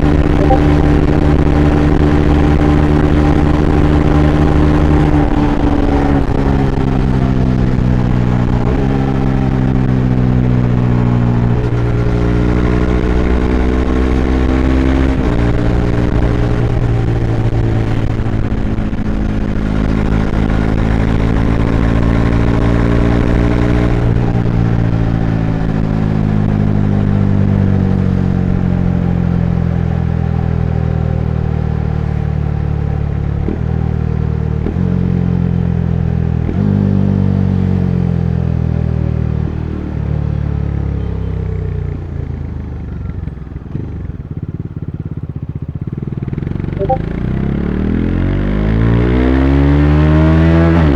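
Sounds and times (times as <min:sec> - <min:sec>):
motorcycle engine running: 0:41.8 - 0:47.0.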